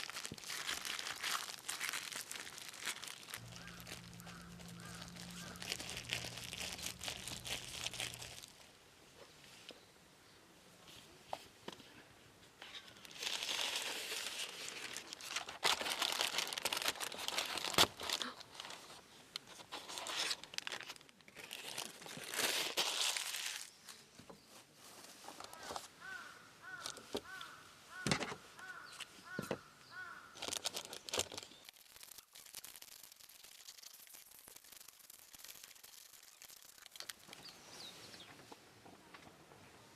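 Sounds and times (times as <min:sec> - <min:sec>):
packaging crinkling: 0:00.0 - 0:08.7, 0:13.0 - 0:23.8, 0:30.4 - 0:37.6
high-pitched bird calls: 0:03.0 - 0:08.5.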